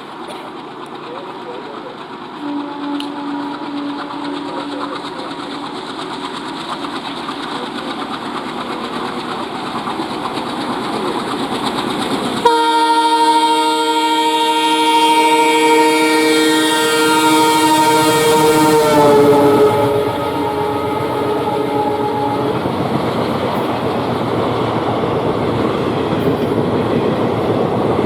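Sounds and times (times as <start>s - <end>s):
train rail rumble: 0.0s - 28.0s
locomotive air horn blasting: 2.4s - 5.0s, 12.4s - 23.0s.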